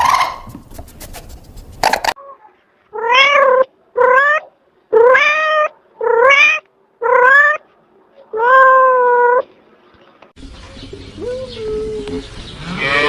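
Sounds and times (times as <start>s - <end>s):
cat meowing: 3.0s - 7.6s, 8.3s - 9.4s.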